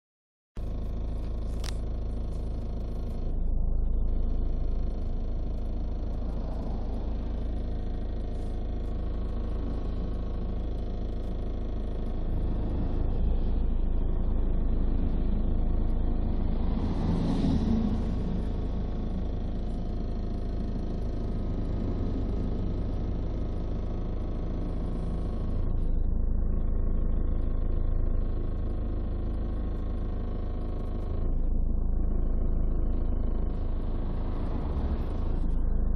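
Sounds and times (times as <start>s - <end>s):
diesel engine rumbling: 0.6s - 35.9s.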